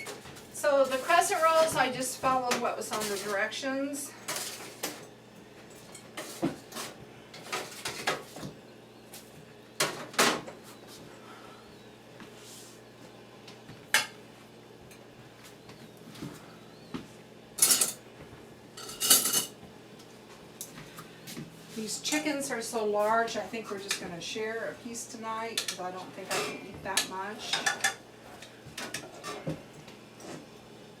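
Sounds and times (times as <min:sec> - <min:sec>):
dishes and utensils clinking: 0:17.6 - 0:18.0, 0:18.8 - 0:19.6, 0:27.4 - 0:28.0.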